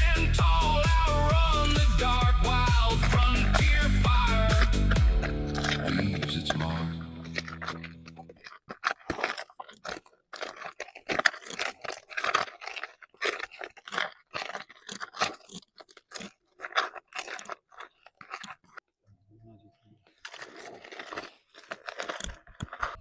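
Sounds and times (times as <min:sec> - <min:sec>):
background music: 0:00.0 - 0:08.1
close-up crunches: 0:01.4 - 0:18.8, 0:20.1 - 0:23.0.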